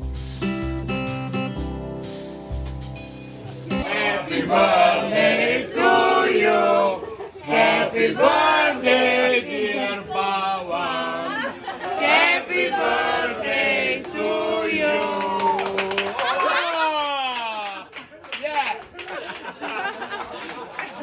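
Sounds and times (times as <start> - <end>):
choir singing chant-like phrases: 3.7 - 16.0.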